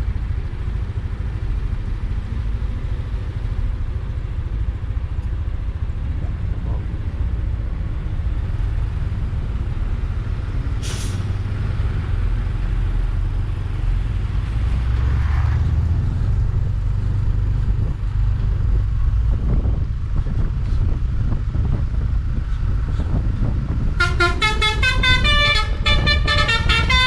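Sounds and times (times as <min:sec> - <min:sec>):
bus diesel engine rumble: 0:00.0 - 0:27.0
air brake hiss: 0:10.8 - 0:11.3.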